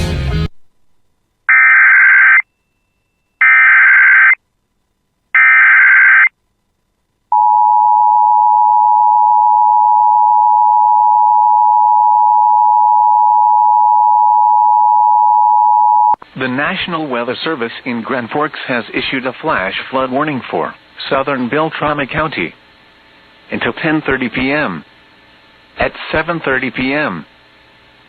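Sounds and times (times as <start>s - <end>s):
digital data squawk: 1.5s - 2.4s, 3.4s - 4.4s, 5.4s - 6.3s.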